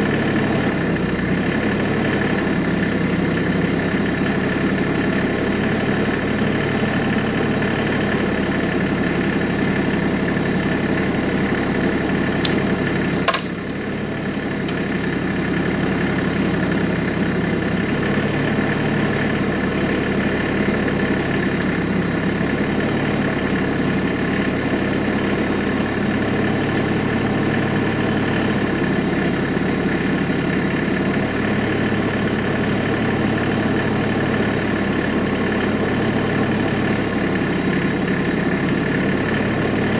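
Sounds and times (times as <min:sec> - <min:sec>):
tractor engine idling: 0:00.0 - 0:39.9
sharp click: 0:12.4 - 0:13.8, 0:14.6 - 0:15.8.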